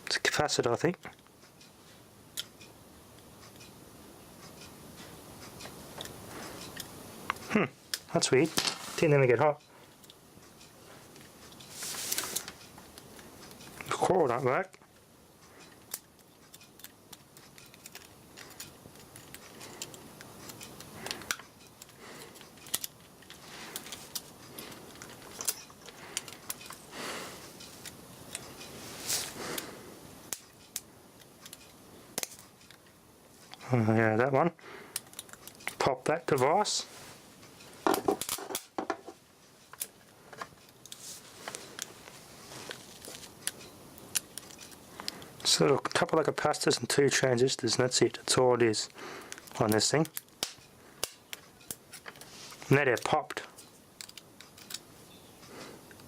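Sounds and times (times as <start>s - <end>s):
small electronic parts clicking: 1.0s - 3.8s, 5.4s - 8.1s, 9.6s - 13.9s, 14.6s - 28.7s, 30.3s - 33.6s, 34.9s - 35.8s, 42.6s - 46.9s, 49.2s - 56.0s.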